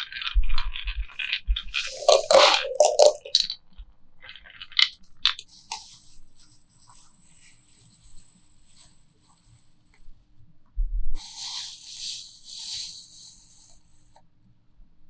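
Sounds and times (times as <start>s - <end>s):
marbles rattling on marble run: 1.8s - 3.5s.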